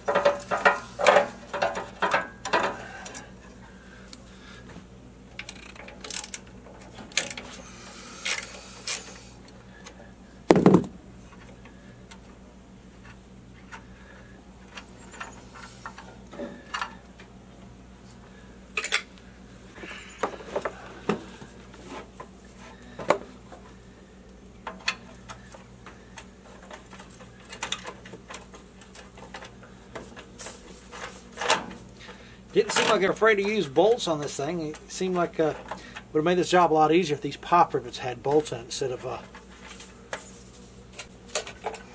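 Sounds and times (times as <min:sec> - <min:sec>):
loud thump: 0:10.5 - 0:11.0.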